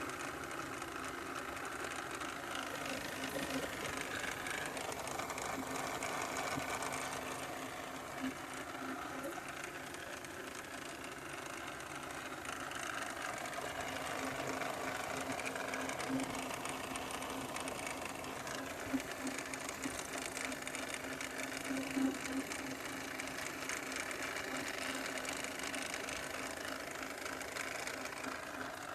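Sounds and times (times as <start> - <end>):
sharp engine clicks: 0.0 - 28.9.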